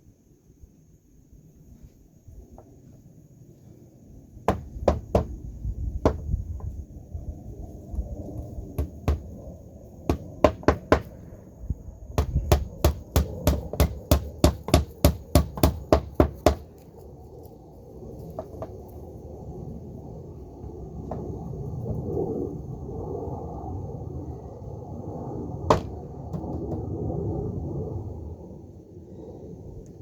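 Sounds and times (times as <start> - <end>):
hammer driving nails into wood: 10.1 - 11.2, 12.2 - 16.6, 25.7 - 26.8.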